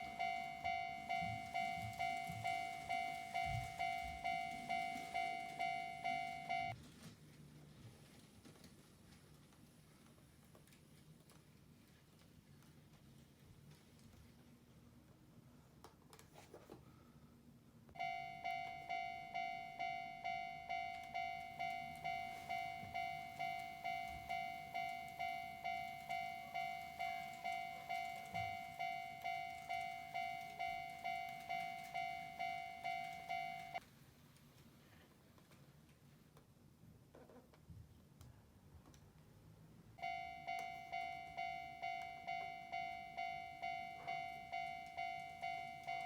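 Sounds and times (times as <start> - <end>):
electronic railway warning bell: 0.0 - 6.8, 18.0 - 33.8, 40.0 - 46.0.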